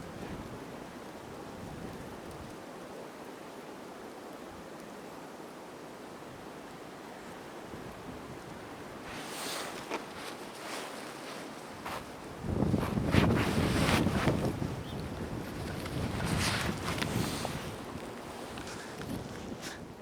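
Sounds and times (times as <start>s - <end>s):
steady rushing hiss: 3.0s - 20.0s
snowshoe steps crunching in snow: 8.9s - 19.8s.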